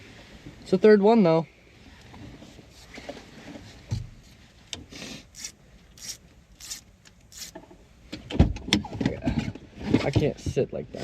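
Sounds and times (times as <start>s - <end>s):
rubbing scraping strokes: 2.4s - 7.6s.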